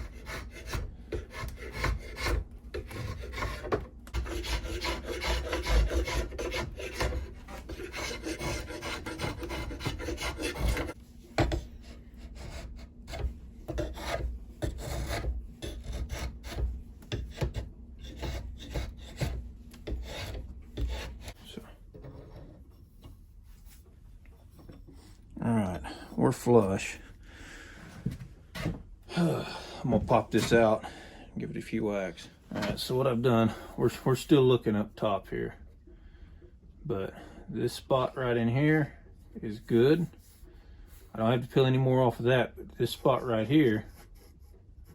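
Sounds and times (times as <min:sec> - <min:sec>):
hand tool rasping wood: 0:00.0 - 0:21.4.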